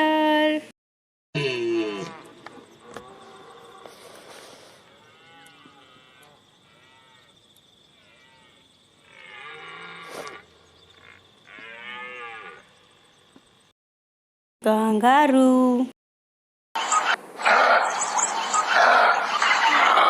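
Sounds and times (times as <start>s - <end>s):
deer calling: 16.9s - 20.0s.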